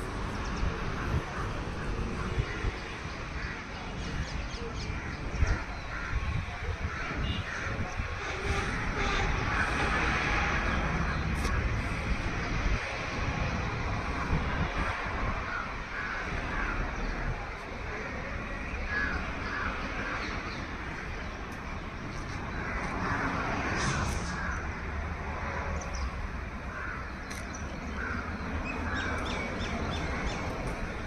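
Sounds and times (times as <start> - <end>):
crows cawing: 1.0 - 3.8, 4.9 - 8.0, 15.4 - 18.2, 18.9 - 21.0, 22.5 - 24.9, 26.6 - 30.4.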